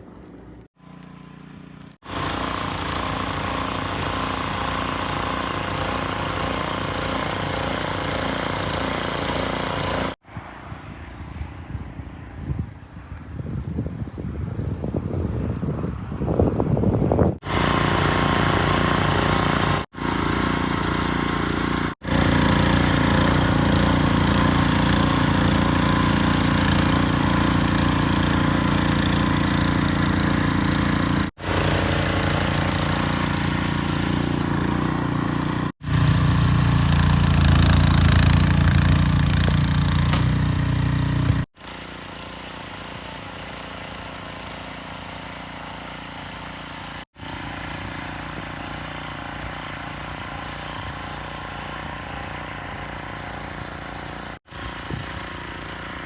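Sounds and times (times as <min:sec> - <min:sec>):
engine running: 0:00.0 - 0:10.2, 0:17.4 - 0:56.0.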